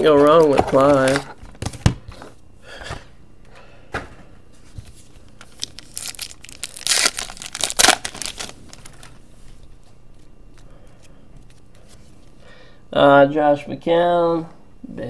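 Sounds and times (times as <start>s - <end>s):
card pack wrapper tearing and crinkling: 5.4s - 9.2s.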